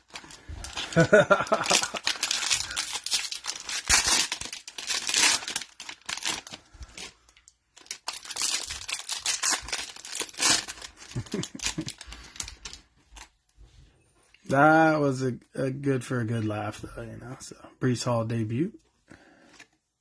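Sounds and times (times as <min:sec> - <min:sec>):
cellophane wrapper crinkling: 0:00.0 - 0:13.5.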